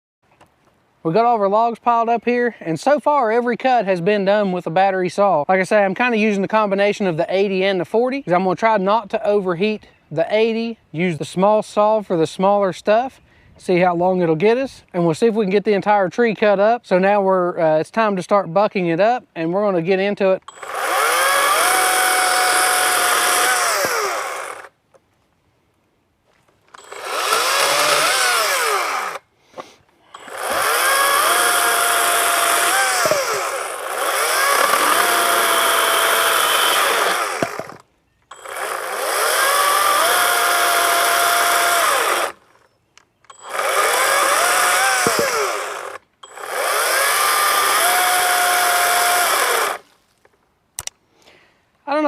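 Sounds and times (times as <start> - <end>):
cordless chainsaw cutting logs: 20.5 - 24.8, 26.8 - 29.3, 30.1 - 42.7, 43.3 - 50.0.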